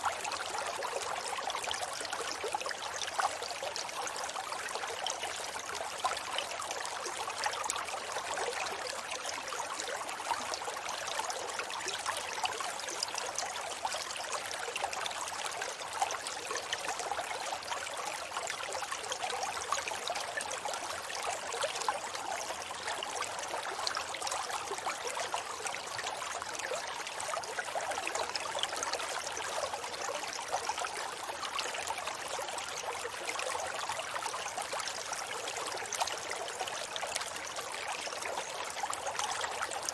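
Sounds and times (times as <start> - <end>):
river water flowing over stones: 0.0 - 39.9.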